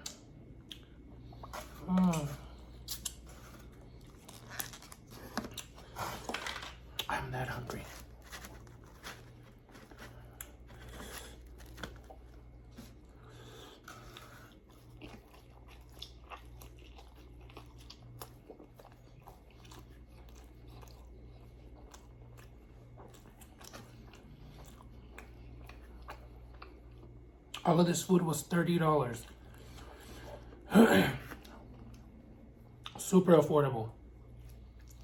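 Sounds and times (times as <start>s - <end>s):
person chewing and crunching: 0.0s - 27.8s, 34.1s - 35.0s
steady low hum: 0.0s - 35.0s.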